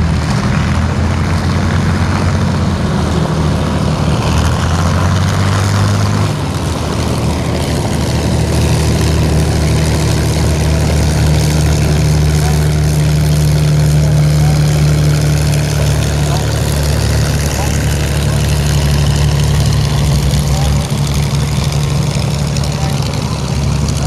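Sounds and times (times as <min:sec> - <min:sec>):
propeller aircraft piston engine: 0:00.0 - 0:24.0.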